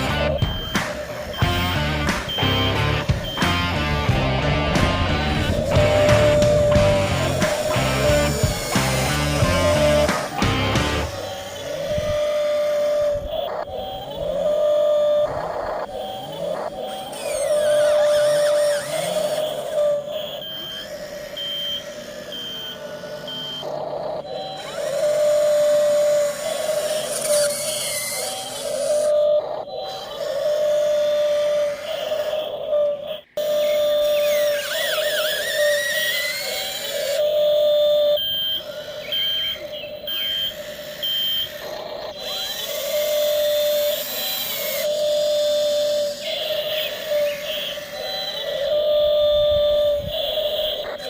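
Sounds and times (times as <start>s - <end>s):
short high beeps: 0.0s - 4.1s, 37.4s - 42.3s
short high reversing beeps: 0.0s - 51.0s
whine of running machinery: 0.0s - 51.0s.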